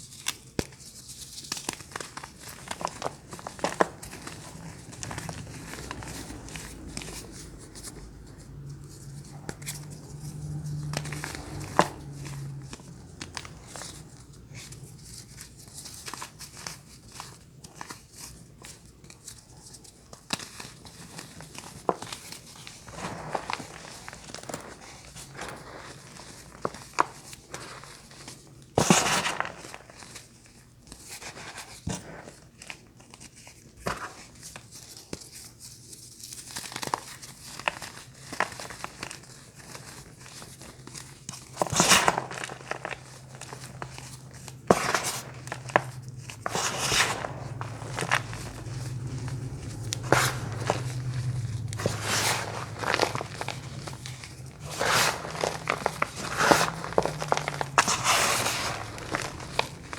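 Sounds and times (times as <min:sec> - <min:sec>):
packaging crinkling and tearing: 0:36.2 - 0:59.9
crunchy bars crunching: 0:40.6 - 0:59.9.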